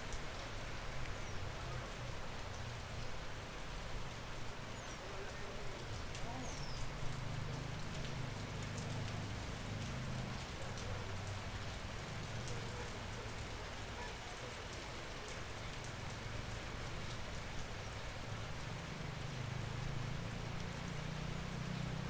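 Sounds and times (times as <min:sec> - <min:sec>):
rain hissing: 0:00.0 - 0:14.4, 0:15.3 - 0:22.0
raindrops clicking: 0:05.8 - 0:14.0.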